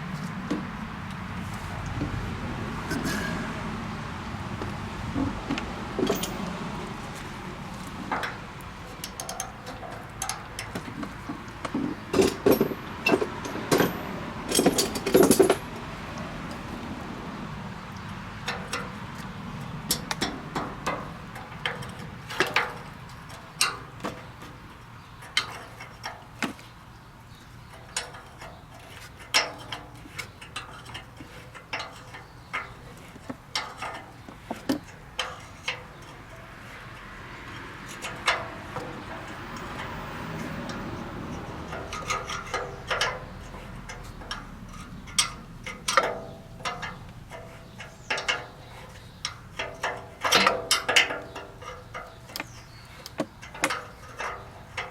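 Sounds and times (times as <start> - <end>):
ringing metal knocks: 5.1 - 6.7, 8.1 - 15.8
metal tools clinking and knocking: 5.5 - 6.7, 7.8 - 15.8, 27.8 - 54.9.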